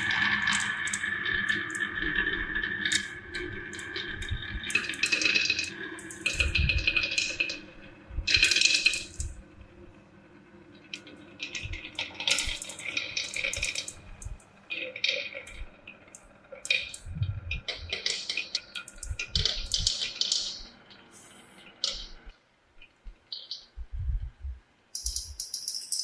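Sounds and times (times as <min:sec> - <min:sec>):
marbles rattling down plastic run: 0:08.5 - 0:09.2, 0:25.0 - 0:26.0.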